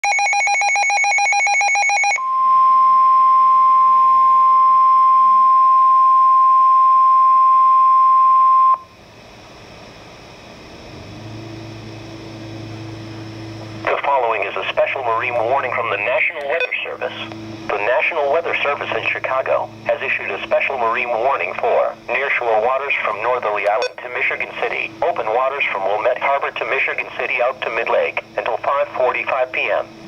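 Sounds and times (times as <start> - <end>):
steady warning alarm tone: 0.0 - 8.9, 13.8 - 30.0
radio hiss and hum: 13.1 - 30.0.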